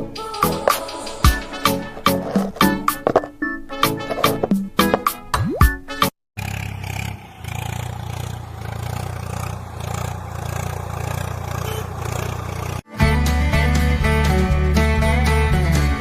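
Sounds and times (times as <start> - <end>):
diesel engine running: 6.4 - 12.9.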